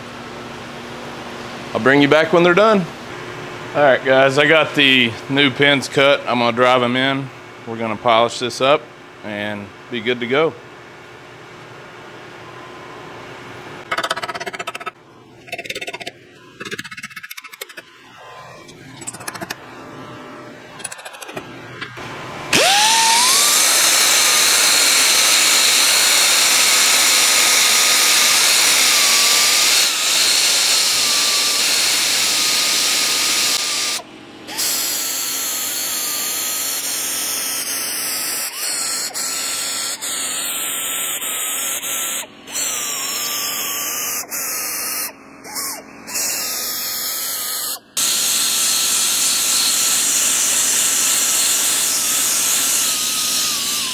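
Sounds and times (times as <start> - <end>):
power tool whining: 13.8 - 53.9.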